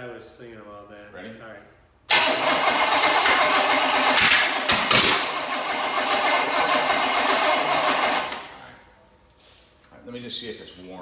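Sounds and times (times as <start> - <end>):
engine cranking on starter: 2.1 - 8.7.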